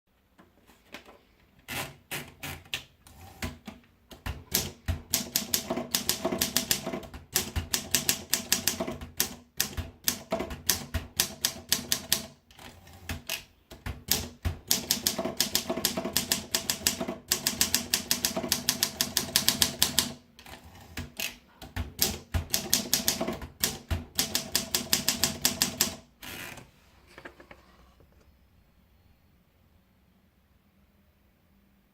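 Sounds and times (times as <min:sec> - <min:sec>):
typewriter typing: 0:01.7 - 0:26.1.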